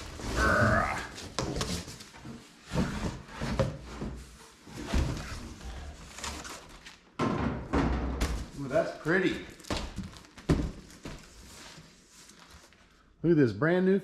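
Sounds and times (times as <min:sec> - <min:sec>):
packaging rustling: 0:09.1 - 0:12.9.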